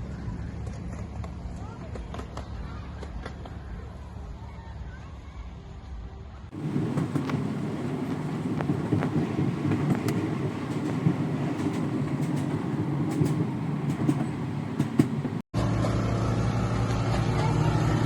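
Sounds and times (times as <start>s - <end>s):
engine hum: 6.5s - 18.0s
train rumbling: 6.5s - 18.0s
clicks and rattles: 6.6s - 15.4s.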